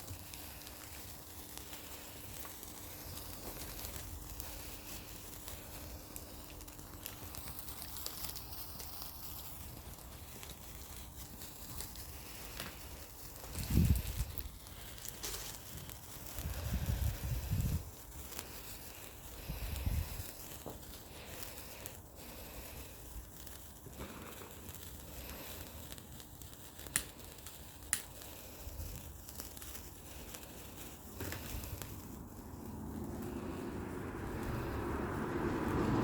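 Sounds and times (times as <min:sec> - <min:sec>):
sparkler fizzing and crackling: 0:00.0 - 0:36.0
wind rumble on microphone: 0:13.5 - 0:14.6, 0:16.3 - 0:18.1, 0:19.4 - 0:20.4, 0:31.4 - 0:36.0.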